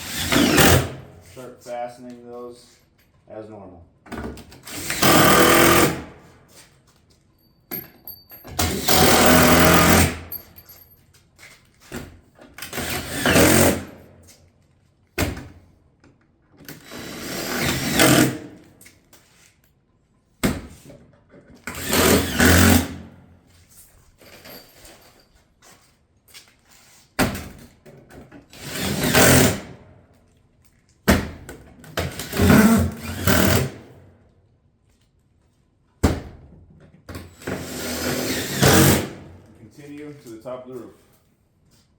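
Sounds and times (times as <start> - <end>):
power driver driving fasteners: 0.0 - 1.0, 4.6 - 6.0, 8.6 - 10.3, 21.7 - 23.0, 32.0 - 33.8.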